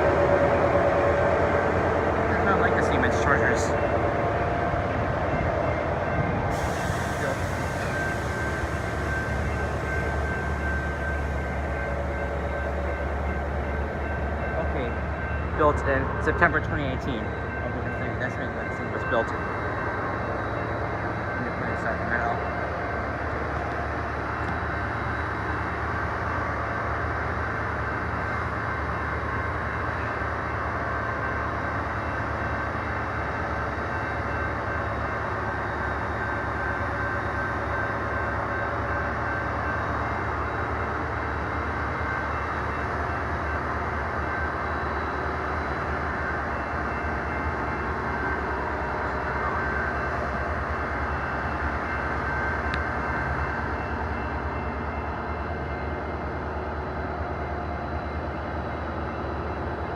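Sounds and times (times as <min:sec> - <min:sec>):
diesel locomotive idling: 0:00.0 - 0:57.7.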